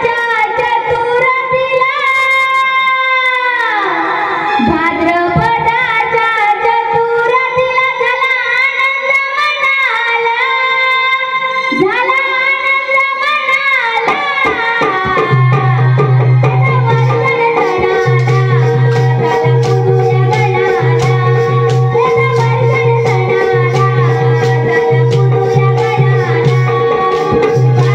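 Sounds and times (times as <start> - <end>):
hand drum percussion: 14.1 - 27.9
melodic singing: 16.0 - 27.9.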